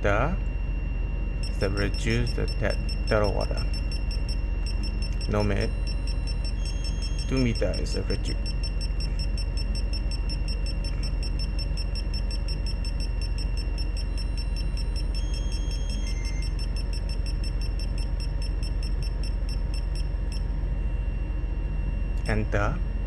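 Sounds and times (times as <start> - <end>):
low machinery hum: 0.0 - 23.0
high-pitched electronic tone: 1.4 - 20.0
fast even ticking: 1.4 - 20.1.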